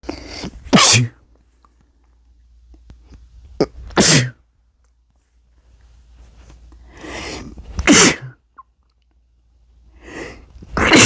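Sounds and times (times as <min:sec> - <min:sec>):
person sneezing: 0:00.1 - 0:01.2, 0:03.6 - 0:04.4, 0:07.2 - 0:08.4, 0:10.7 - 0:11.0.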